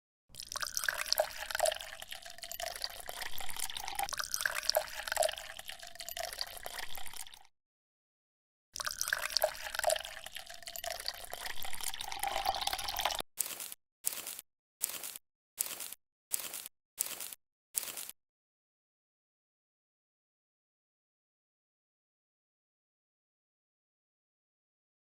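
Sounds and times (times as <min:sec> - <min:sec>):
water trickling and dripping: 0:00.3 - 0:07.5, 0:08.8 - 0:13.2.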